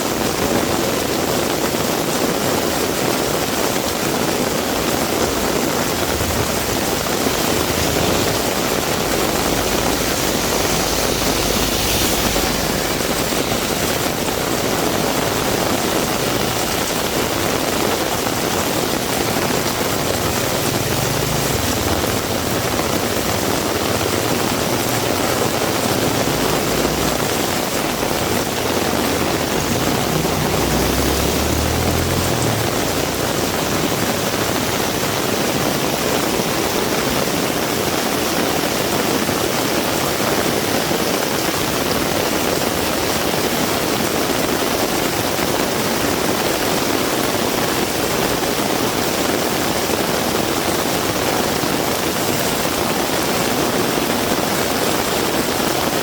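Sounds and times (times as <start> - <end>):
heavy rain pouring: 0.0 - 56.0
low rumbles: 4.2 - 35.5.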